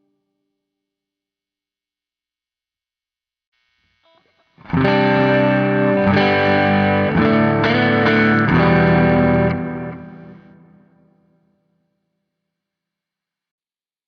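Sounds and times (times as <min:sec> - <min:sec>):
distorted electric guitar chords: 0:04.6 - 0:11.2.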